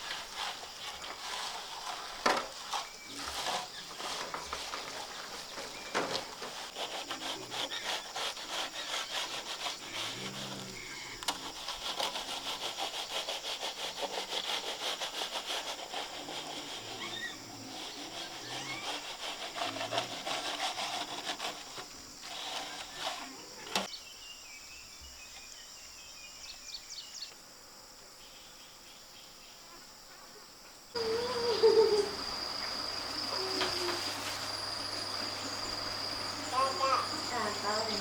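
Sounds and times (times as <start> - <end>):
tool rasping rough surface: 0.0 - 23.8
insect chirring: 31.0 - 38.0.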